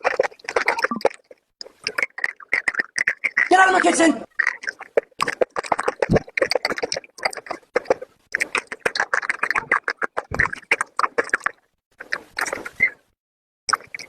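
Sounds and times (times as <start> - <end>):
crisp crunching of chewing: 0.0 - 13.0.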